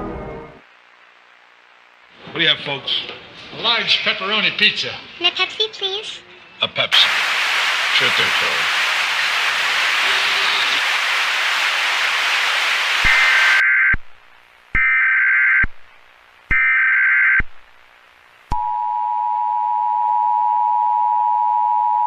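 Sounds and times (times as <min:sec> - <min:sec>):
static hiss: 0:00.5 - 0:05.4, 0:06.8 - 0:18.7
emergency alert data bursts: 0:12.6 - 0:14.1, 0:14.8 - 0:15.8, 0:16.5 - 0:17.6.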